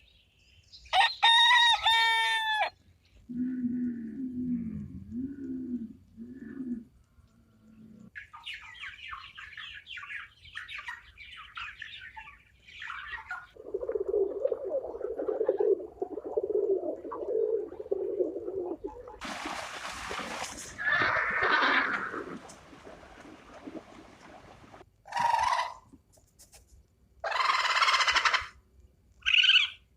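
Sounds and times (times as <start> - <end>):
low rippling animal call: 3.3 - 8.1, 13.6 - 25.8
loud animal call: 20.7 - 23.2.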